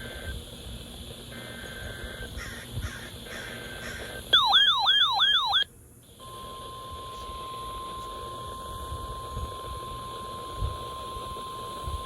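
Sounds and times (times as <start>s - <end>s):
electronic siren tone sweeping: 4.3s - 5.7s
steady alarm tone: 4.3s - 12.0s.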